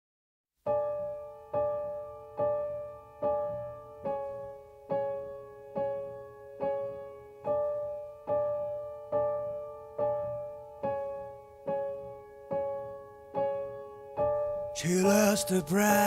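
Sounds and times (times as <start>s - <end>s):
slow piano notes: 0.7s - 16.0s.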